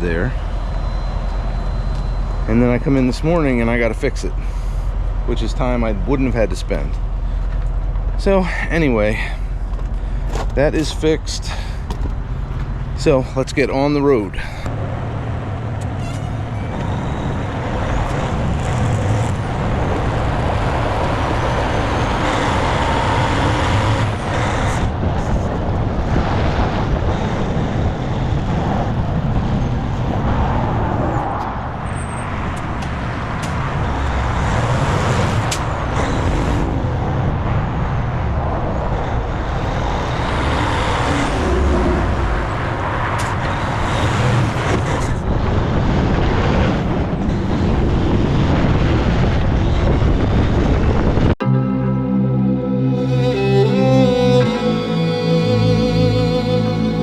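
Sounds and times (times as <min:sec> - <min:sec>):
truck engine and road noise: 0:00.0 - 0:52.4
short sharp sounds: 0:51.4 - 0:57.0.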